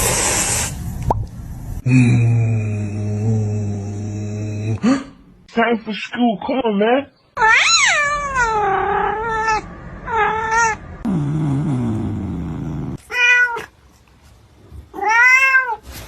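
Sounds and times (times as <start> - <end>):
cat meowing loudly: 7.4 - 10.8, 13.0 - 13.7, 15.0 - 15.8
cat yowling: 7.4 - 10.8.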